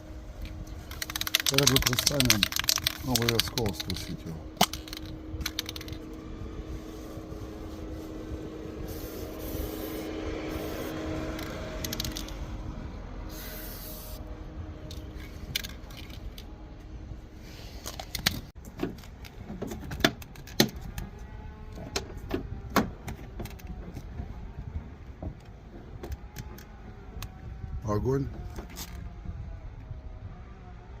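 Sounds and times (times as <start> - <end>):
aerosol can being shaken: 0.7 - 6.0, 8.9 - 12.4
short hissing sprays: 8.8 - 11.0, 13.3 - 14.2.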